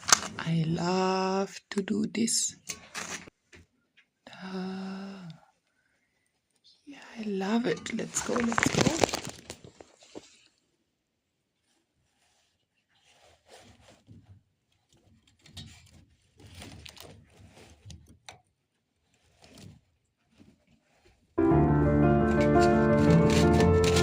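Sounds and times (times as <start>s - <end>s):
rustling and soft handling knocks: 11.6s - 21.4s
piano music: 21.4s - 24.0s.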